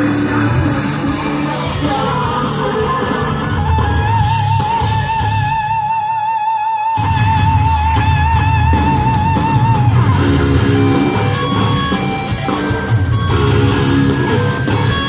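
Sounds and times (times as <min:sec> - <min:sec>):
drums and bass crashing in: 0:00.0 - 0:05.9, 0:07.0 - 0:15.0
electric guitar riff: 0:00.0 - 0:15.0
live hard rock band playing: 0:00.0 - 0:15.0.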